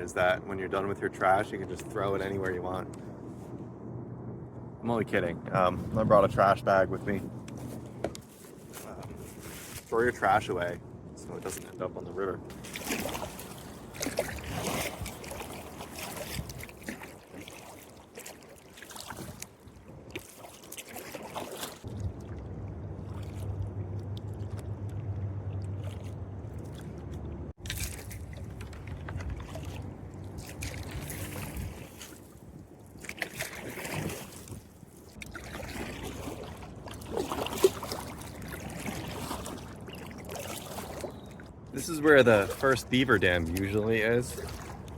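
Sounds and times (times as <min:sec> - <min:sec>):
low steady hum: 0:00.0 - 0:17.2, 0:21.9 - 0:33.6
paddle strokes splashing water: 0:07.4 - 0:10.7, 0:12.5 - 0:44.9.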